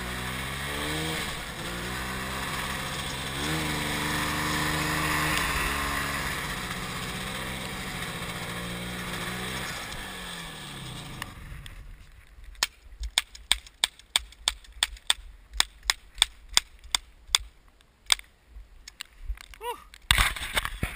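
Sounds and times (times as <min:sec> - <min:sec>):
snowmobile engine running: 0:00.0 - 0:11.9.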